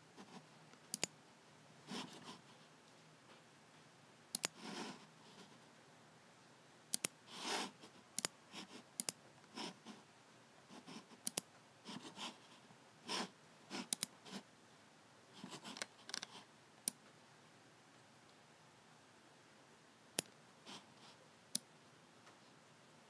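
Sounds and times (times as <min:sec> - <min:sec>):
computer mouse buttons clicking: 0:00.8 - 0:01.2, 0:04.3 - 0:04.7, 0:06.9 - 0:07.2, 0:09.0 - 0:09.2, 0:11.2 - 0:11.5, 0:13.9 - 0:14.1.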